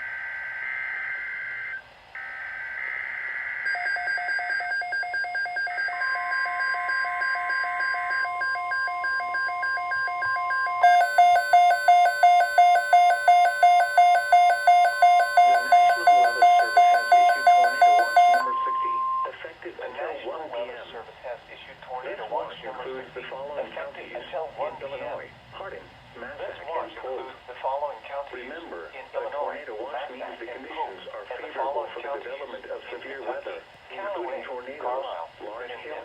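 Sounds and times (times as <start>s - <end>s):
pulsing electronic alarm beeps: 5.2s - 19.3s
steady alert tone: 10.8s - 19.2s
two-tone warbling data bursts: 10.8s - 19.3s.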